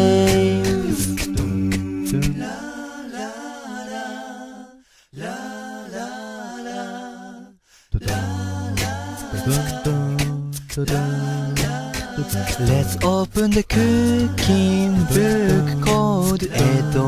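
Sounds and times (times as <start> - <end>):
music with drum beat: 0.0 - 2.4, 8.7 - 17.0
wordless singing: 0.0 - 17.0.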